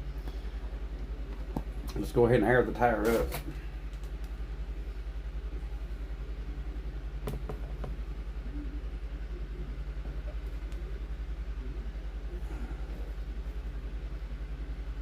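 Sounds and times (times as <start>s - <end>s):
air compressor pulsing hum: 0.0s - 15.0s.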